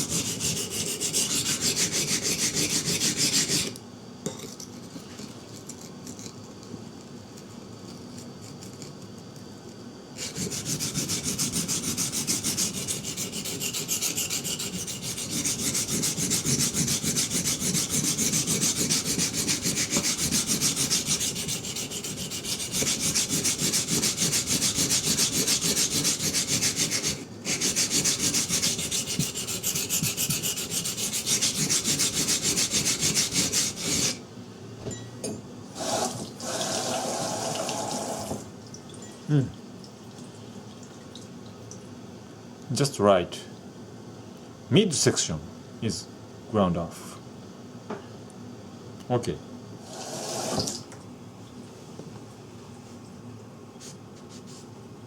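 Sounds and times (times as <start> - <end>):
knife scrubbing on whetstone: 0.0 - 3.8, 10.2 - 34.2.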